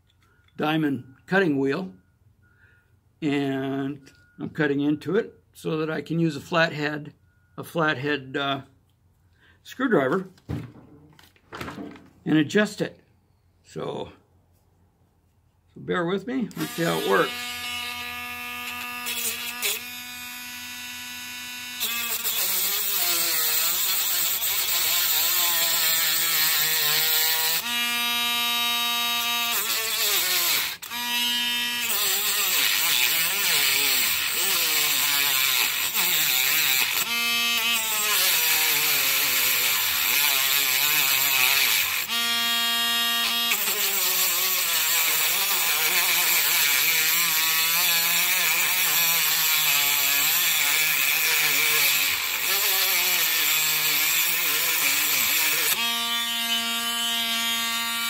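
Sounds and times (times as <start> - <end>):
rotary tool whining while cutting: 16.5 - 58.0.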